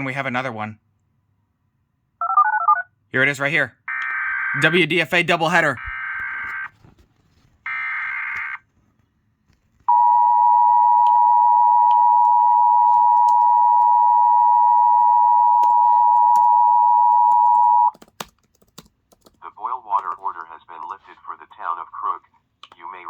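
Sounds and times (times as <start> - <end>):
two-tone attention signal: 9.9 - 17.9.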